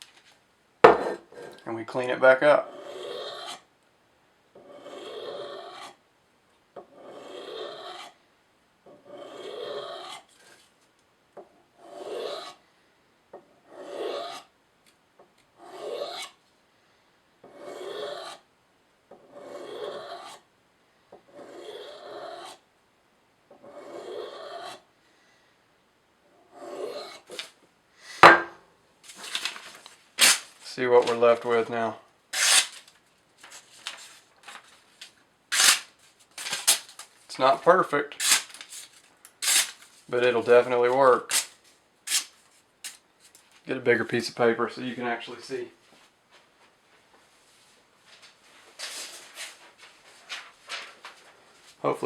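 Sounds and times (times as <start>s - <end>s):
knife scraping on ceramic mug: 11.8s - 12.6s, 19.3s - 20.4s
sharp knock: 28.2s - 28.6s.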